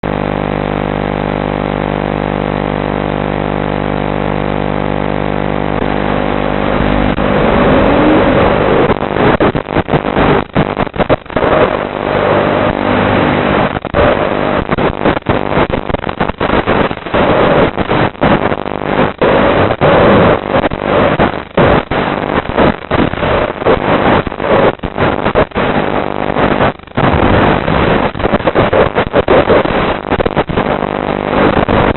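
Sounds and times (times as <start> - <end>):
drone motors whining: 5.8 - 10.4.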